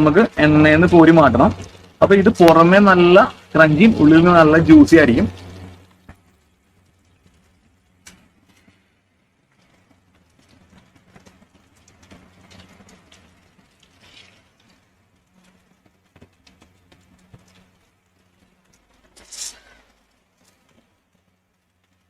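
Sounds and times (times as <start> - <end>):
chicken deep-frying in oil: 0.0 - 22.0.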